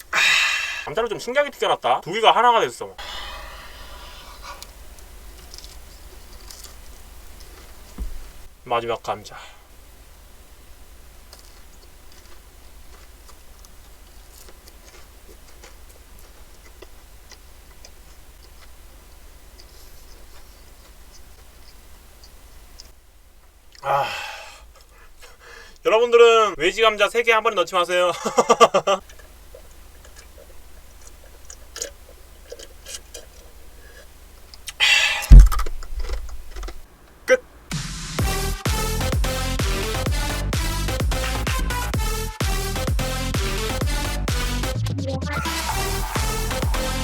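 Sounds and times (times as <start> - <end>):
faint low hum: 0.0 - 41.2
person chewing food: 3.0 - 8.4, 11.0 - 25.8, 29.0 - 36.9.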